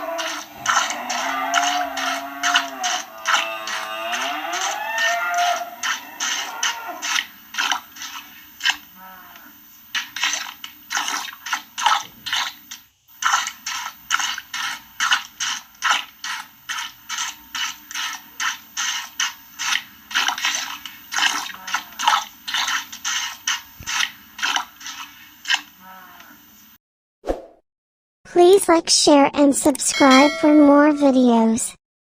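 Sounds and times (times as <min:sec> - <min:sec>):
milk squirting into bucket: 0:10.0 - 0:12.6, 0:13.2 - 0:25.7.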